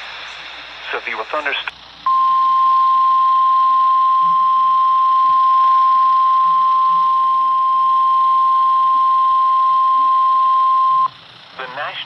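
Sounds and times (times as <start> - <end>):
faint radio hiss: 0.0 - 2.0, 11.5 - 12.0
steady alarm tone: 2.1 - 12.0.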